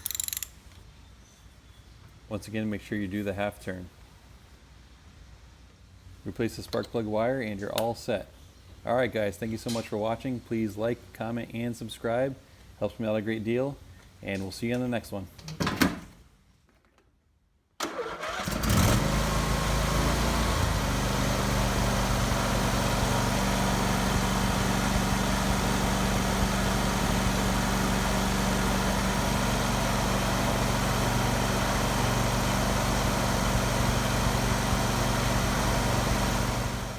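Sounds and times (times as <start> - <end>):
mower engine cranking and running: 0.0 - 0.6, 17.8 - 36.9.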